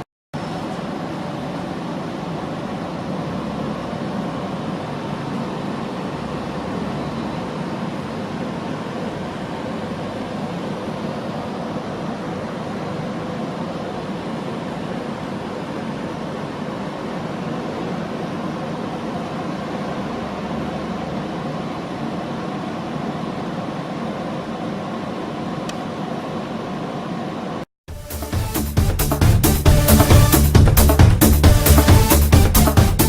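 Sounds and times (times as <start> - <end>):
electronic music: 27.9 - 33.0.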